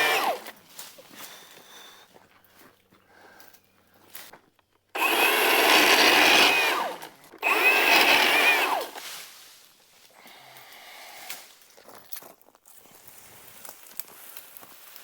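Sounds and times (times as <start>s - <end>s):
battery pole saw running: 0.0s - 0.6s, 5.0s - 9.0s.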